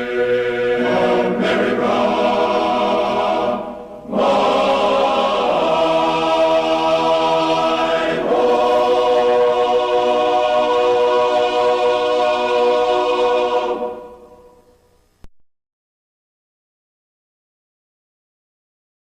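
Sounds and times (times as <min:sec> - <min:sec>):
choir singing held chords: 0:00.0 - 0:14.9.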